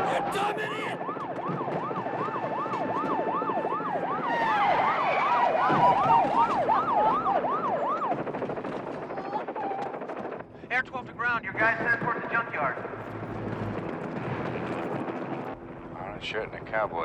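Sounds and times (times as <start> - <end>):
police sirens yelping: 0.0 - 8.4.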